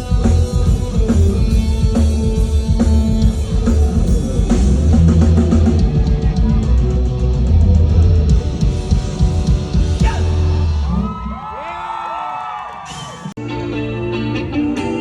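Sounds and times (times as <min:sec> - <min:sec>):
electric guitar: 0:00.0 - 0:11.2, 0:13.4 - 0:15.0
bass guitar: 0:00.0 - 0:11.4, 0:13.3 - 0:15.0
drum kit: 0:00.0 - 0:11.4.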